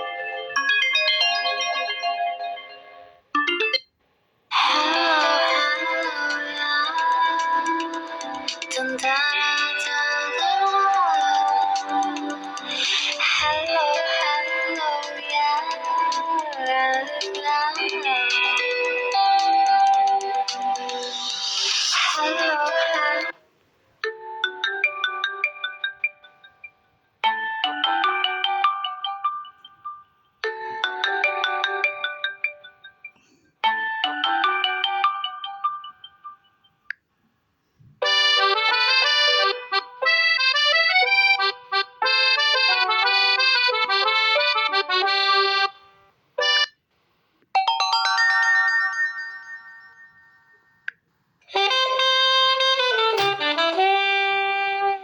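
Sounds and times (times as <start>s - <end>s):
chime: 0.0s - 3.8s, 24.1s - 36.9s, 47.6s - 51.0s
synthesized phone ringtones: 3.4s - 8.6s.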